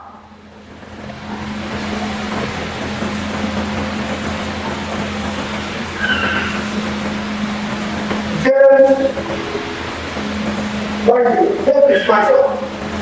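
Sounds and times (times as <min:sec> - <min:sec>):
mechanical hum: 0:00.0 - 0:13.0
high-pitched tone: 0:05.9 - 0:13.0.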